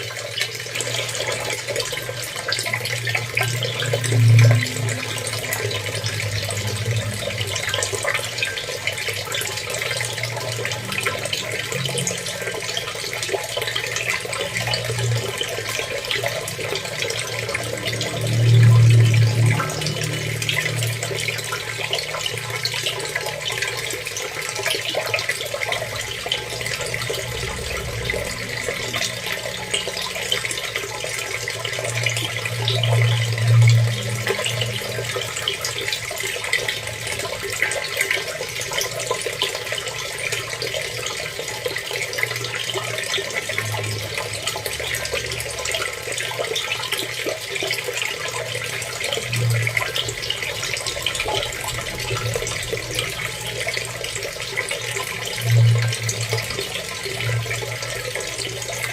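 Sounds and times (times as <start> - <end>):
water running and splashing: 0.0 - 58.9
low rumble: 3.3 - 8.3, 16.4 - 22.5.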